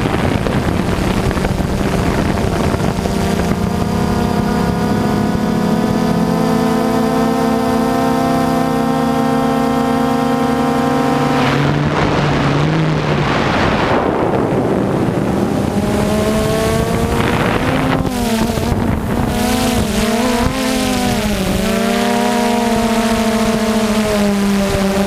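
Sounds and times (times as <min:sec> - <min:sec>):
vehicle engine running: 0:00.0 - 0:25.0
loud rushing noise: 0:11.3 - 0:23.2.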